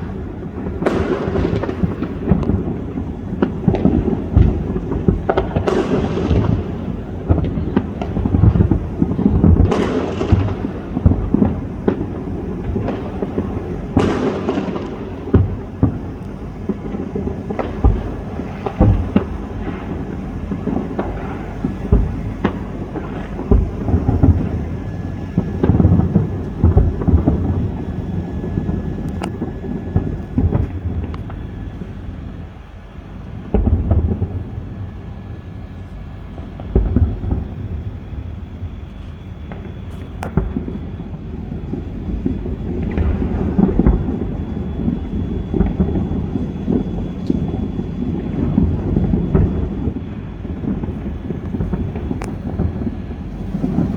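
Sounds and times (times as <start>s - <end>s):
sharp firework bangs: 0.0s - 32.1s, 33.4s - 41.0s, 50.6s - 53.9s
distant fireworks rumbling booms: 0.0s - 53.9s.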